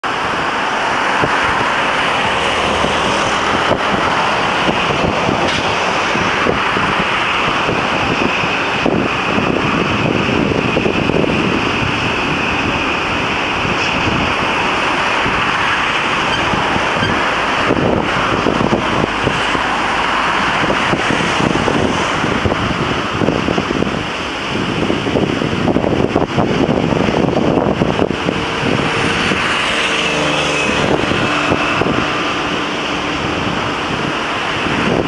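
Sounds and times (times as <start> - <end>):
freight train passing: 0.0 - 35.0
wheels rushing on rail: 0.0 - 35.0.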